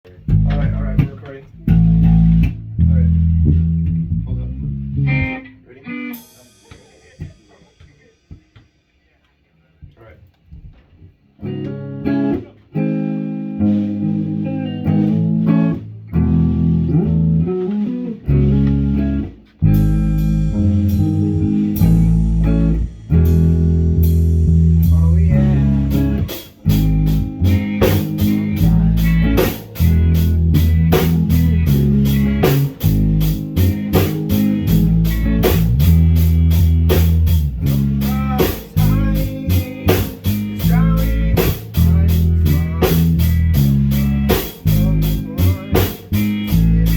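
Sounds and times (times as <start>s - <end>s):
guitar and bass music: 0.0s - 8.1s, 10.6s - 46.9s
drum kit: 0.0s - 46.9s
cymbal hits: 6.2s - 9.0s.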